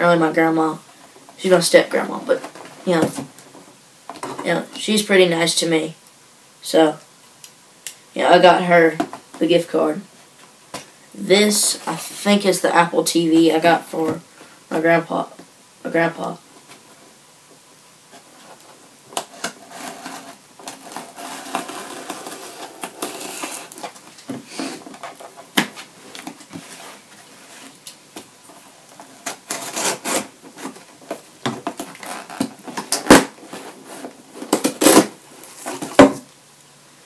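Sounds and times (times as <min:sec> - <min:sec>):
cardboard packaging rustling: 0:18.1 - 0:36.2.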